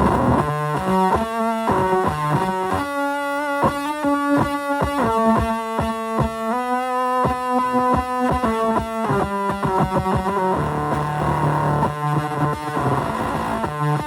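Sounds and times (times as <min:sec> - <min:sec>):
distorted electric guitar: 0:00.0 - 0:14.0.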